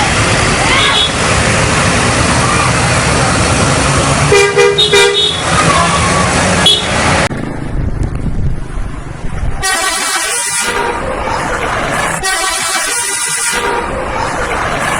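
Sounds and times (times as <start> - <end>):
low engine rumble: 0.0 - 14.9
bus musical horn: 0.8 - 1.4, 4.2 - 5.7, 6.5 - 7.1, 9.6 - 14.9.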